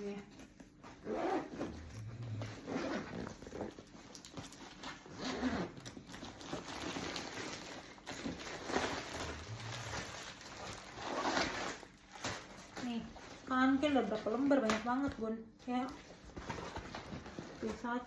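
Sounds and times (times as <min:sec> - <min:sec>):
zipper: 0:00.8 - 0:03.9, 0:04.9 - 0:06.1, 0:08.6 - 0:11.8
backpack fabric rustling: 0:00.8 - 0:06.6
person snoring: 0:09.2 - 0:10.0.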